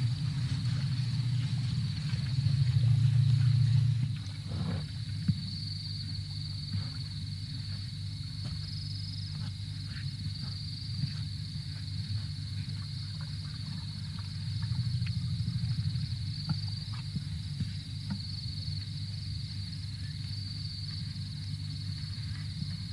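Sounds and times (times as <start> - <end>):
low steady drone: 0.0 - 17.8
crickets trilling: 0.0 - 22.9.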